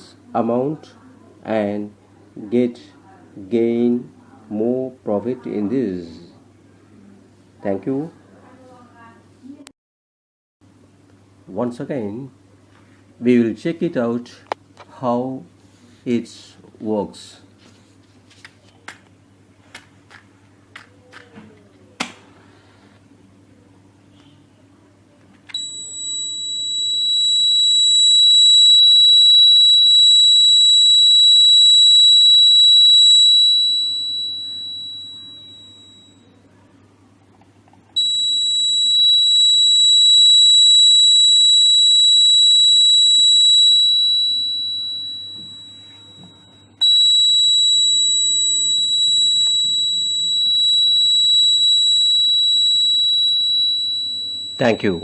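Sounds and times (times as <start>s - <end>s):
alarm buzzer high-pitched tone: 25.6s - 36.3s, 38.0s - 55.0s.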